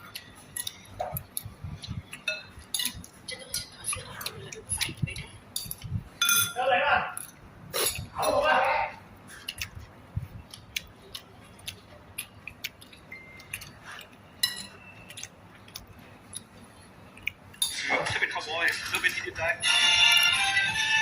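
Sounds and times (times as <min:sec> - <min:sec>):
cutlery clinking against dishes: 0:00.0 - 0:01.3, 0:02.1 - 0:04.1, 0:05.6 - 0:06.6, 0:13.0 - 0:15.3, 0:17.5 - 0:19.2.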